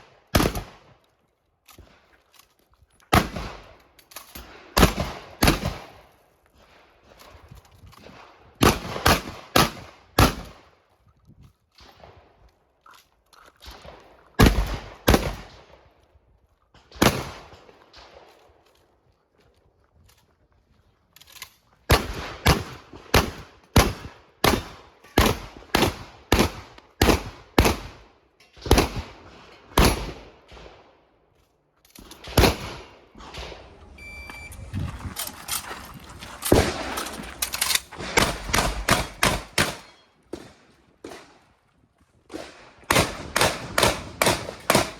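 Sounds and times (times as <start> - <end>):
shotgun shots: 0.3 - 0.8, 13.6 - 15.6, 16.9 - 18.2, 21.9 - 28.0, 28.6 - 30.8, 32.0 - 34.4, 36.3 - 41.4, 42.3 - 44.9
short high beep: 33.8 - 34.8.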